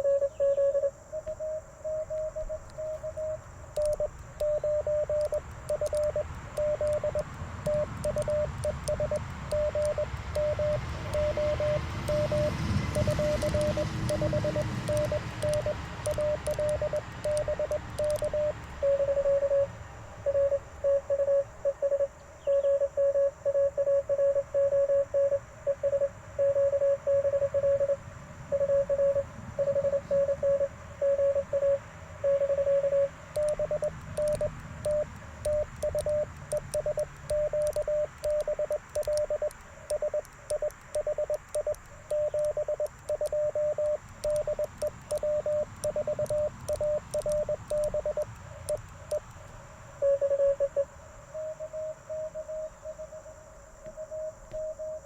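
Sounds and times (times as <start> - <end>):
morse code tone: 0.0 - 49.3, 50.0 - 53.3
morse paddle clicks: 3.8 - 18.8, 33.4 - 49.5.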